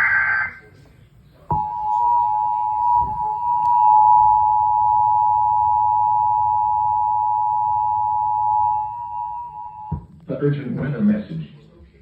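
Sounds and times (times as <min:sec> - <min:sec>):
faint low hum: 0:00.0 - 0:12.0
two-tone alert signal: 0:01.5 - 0:10.0.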